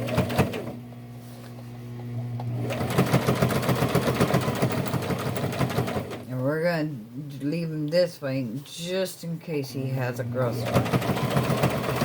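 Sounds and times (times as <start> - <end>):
sewing machine motor humming: 0.0 - 1.0, 1.9 - 6.3, 10.3 - 12.0.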